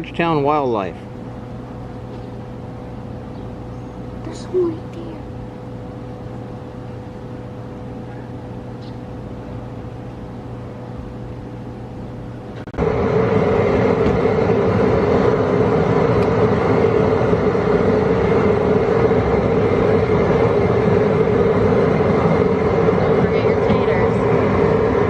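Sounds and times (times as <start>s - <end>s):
gas burner rushing hiss: 6.4s - 25.0s.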